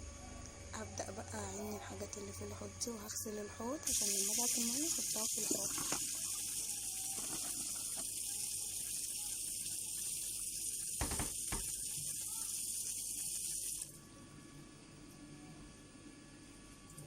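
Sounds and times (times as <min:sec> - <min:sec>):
tap running into a sink: 0:04.0 - 0:08.4, 0:10.4 - 0:12.3.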